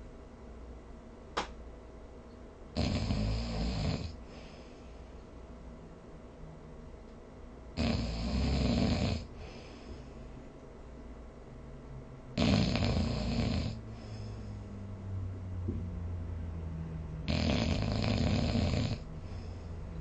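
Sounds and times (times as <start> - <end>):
person snoring: 2.8 - 4.6, 7.8 - 9.7, 12.4 - 14.6, 17.3 - 19.5
soft breath: 4.1 - 5.5, 9.2 - 10.6, 13.8 - 15.2, 19.0 - 20.0.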